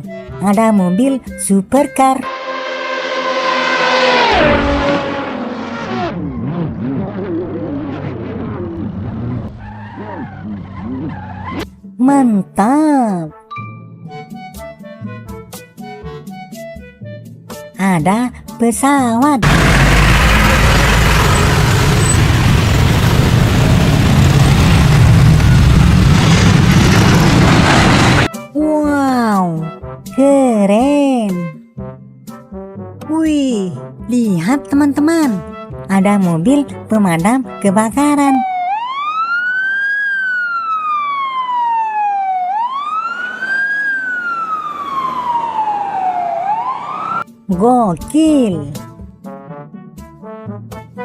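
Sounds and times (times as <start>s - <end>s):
fire engine siren wailing: 2.2s - 6.6s, 19.4s - 28.3s, 38.1s - 47.3s
vehicle engine rumbling: 2.6s - 11.6s, 19.4s - 28.3s.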